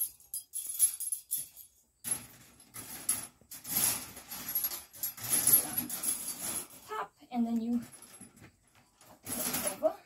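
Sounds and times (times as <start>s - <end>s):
wire mesh panel rattling: 0.0s - 6.9s, 7.7s - 10.0s.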